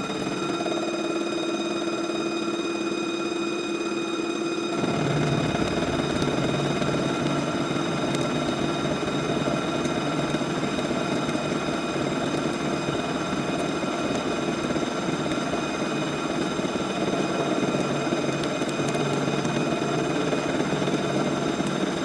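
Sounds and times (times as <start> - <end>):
milling machine cutting: 4.7 - 22.0.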